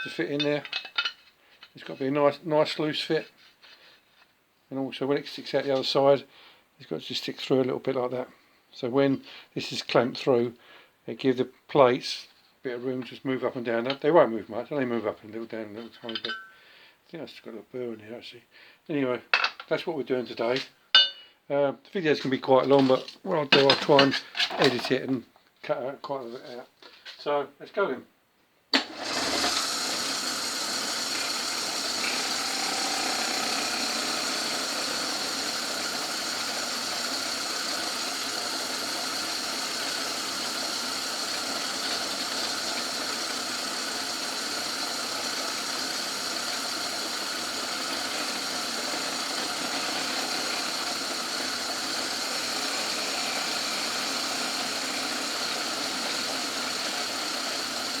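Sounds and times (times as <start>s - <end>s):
lathe motor and gear drone: 28.8s - 58.0s.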